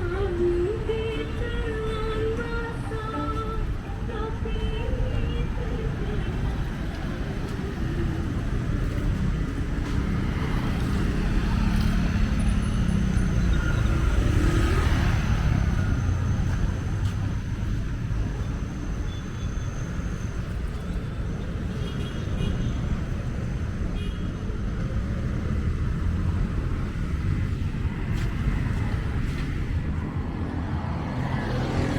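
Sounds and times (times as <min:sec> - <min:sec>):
low rumble of engines: 0:00.0 - 0:31.9
vehicle passing close: 0:06.5 - 0:18.1.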